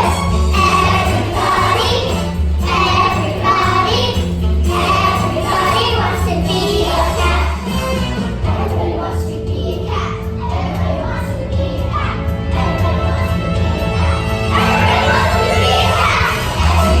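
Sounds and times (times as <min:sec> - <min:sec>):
children singing: 0:00.0 - 0:17.0
instrumental music with bass: 0:00.0 - 0:17.0.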